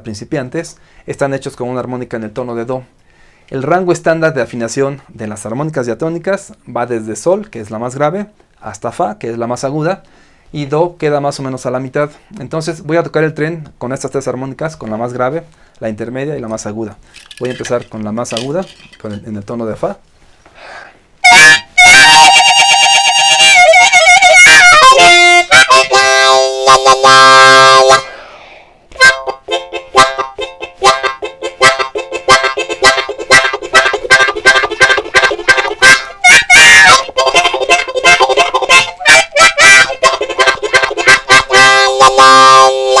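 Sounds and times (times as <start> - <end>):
harmonica chugging rhythm: 21.2 - 28.2, 28.9 - 43.0
harmonica wailing chords: 21.2 - 28.2, 29.0 - 43.0.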